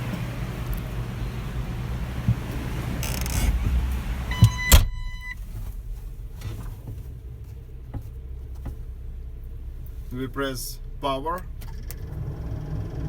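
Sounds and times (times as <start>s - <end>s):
cab door thud: 2.0s - 7.2s
electronic beep: 4.3s - 5.4s
rustle of someone climbing in: 5.3s - 9.0s.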